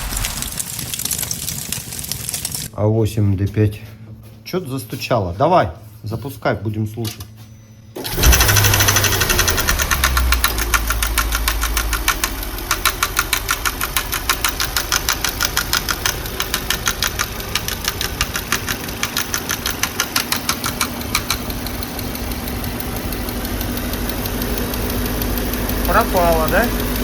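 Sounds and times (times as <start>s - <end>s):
car engine running: 0.0s - 2.7s, 8.0s - 27.0s
fast metallic engine knock: 8.1s - 27.0s.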